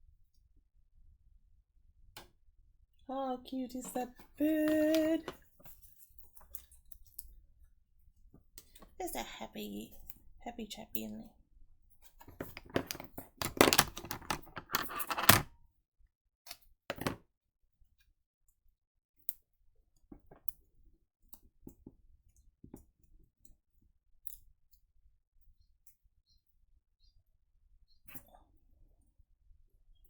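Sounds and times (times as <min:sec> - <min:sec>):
paper rustling and scraping: 0:12.3 - 0:15.4.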